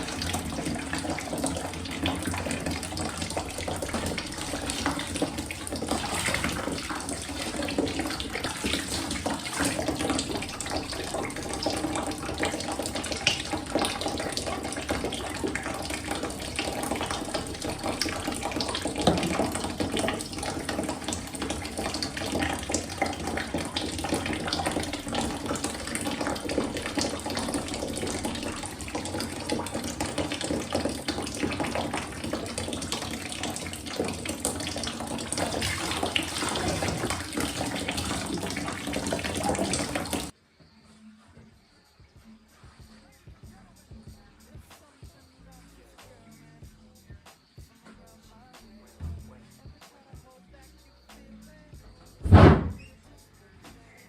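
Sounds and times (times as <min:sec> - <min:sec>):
tap water running: 0:00.0 - 0:40.4.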